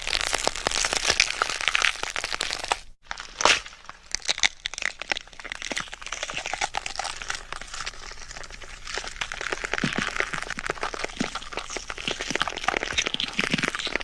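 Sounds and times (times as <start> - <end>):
gory crackling and clicking: 0.0 - 14.0.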